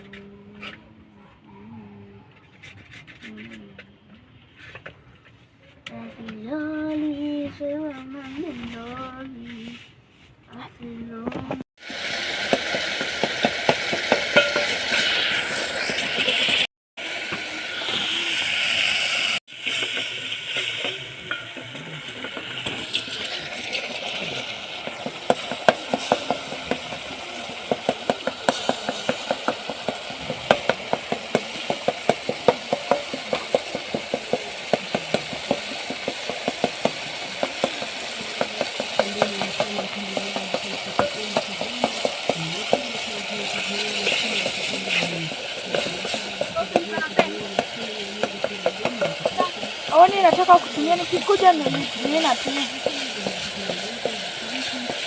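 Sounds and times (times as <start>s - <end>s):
utensil scraping a pan: 2.2s - 5.8s, 12.5s - 16.7s, 19.6s - 55.0s
food sizzling in a pan: 11.7s - 55.0s.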